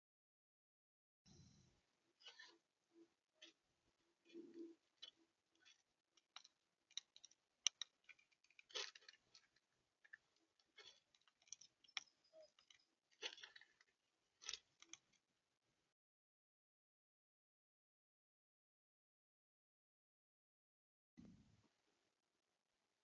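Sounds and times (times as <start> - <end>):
birds pecking at seed: 2.2 - 15.2.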